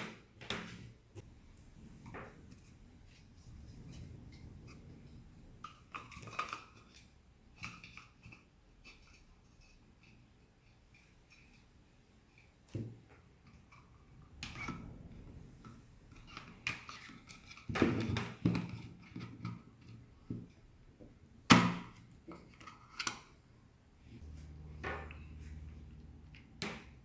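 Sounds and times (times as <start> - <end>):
low steady hum: 1.2 - 6.8, 13.8 - 16.9, 24.2 - 27.0.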